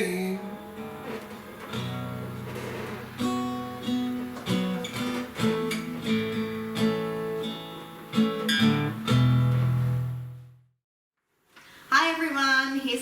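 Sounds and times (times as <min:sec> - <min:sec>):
acoustic guitar strumming chords: 0:00.0 - 0:10.6.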